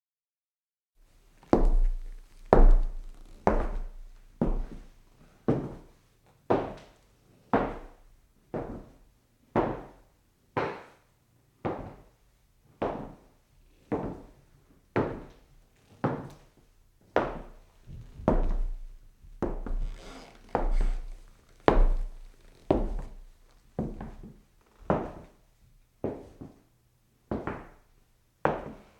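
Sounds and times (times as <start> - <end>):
distant footsteps on wooden floor: 1.5 - 4.8, 17.2 - 25.3.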